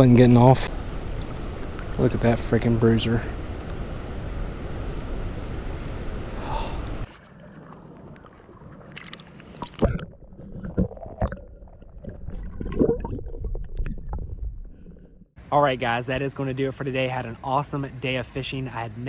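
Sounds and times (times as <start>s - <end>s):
watery gurgles: 6.4s - 15.2s.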